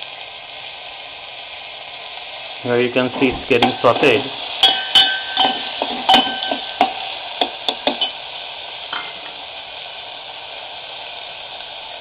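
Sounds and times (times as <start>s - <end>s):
vegetables sizzling in a pot: 0.0s - 12.0s
spoon clinking against pot: 4.6s - 8.2s.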